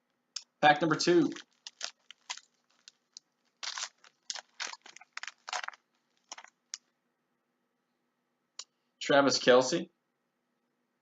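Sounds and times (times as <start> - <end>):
card pack wrapper tearing and crinkling: 0.8 - 6.8.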